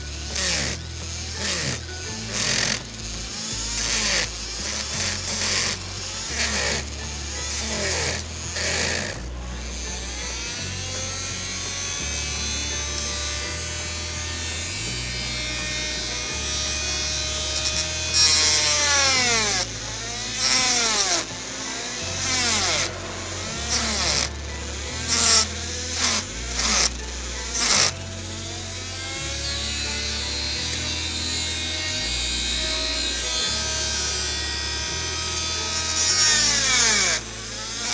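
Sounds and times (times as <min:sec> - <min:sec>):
rotary tool whining: 0:00.0 - 0:37.9.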